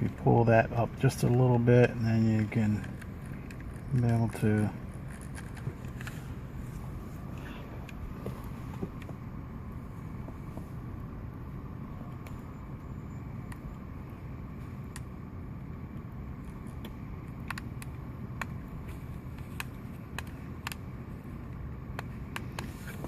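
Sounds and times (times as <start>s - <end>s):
steady low hum: 0.0s - 23.0s
light clicks and ticks: 1.2s - 6.2s.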